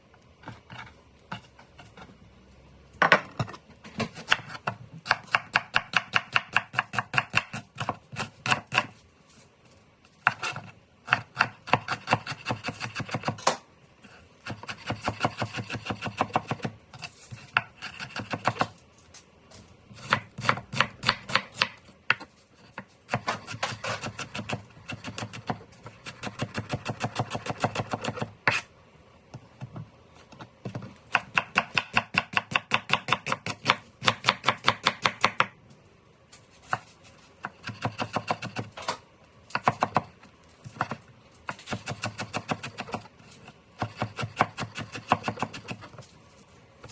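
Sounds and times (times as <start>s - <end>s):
knife chopping on cutting board: 3.0s - 8.9s, 10.2s - 13.6s, 14.4s - 18.7s, 19.9s - 28.7s, 29.7s - 35.6s, 36.6s - 46.0s.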